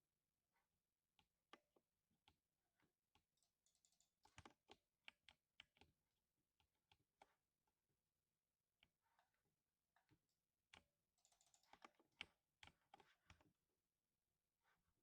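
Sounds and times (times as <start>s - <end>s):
faint mechanical keyboard typing: 3.2s - 6.0s, 10.0s - 13.6s.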